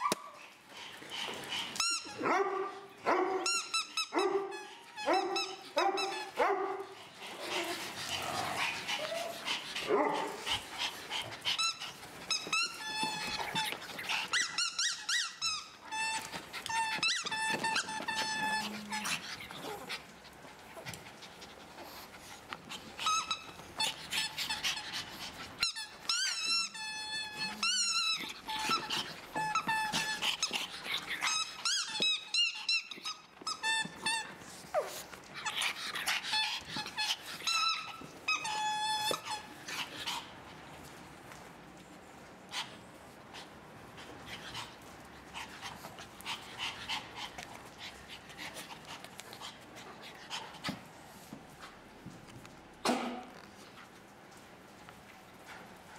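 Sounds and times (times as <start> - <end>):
dog toy squeaking: 3.4 - 6.3, 11.6 - 13.7, 14.3 - 19.0, 23.0 - 24.8, 25.6 - 30.6, 31.2 - 34.4, 36.3 - 39.5.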